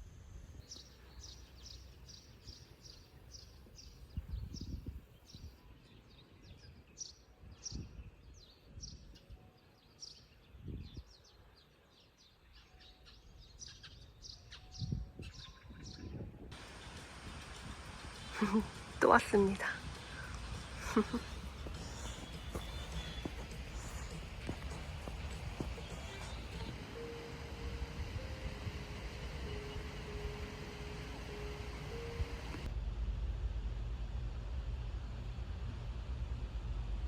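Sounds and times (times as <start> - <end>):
bird chirping: 0.6 - 27.1.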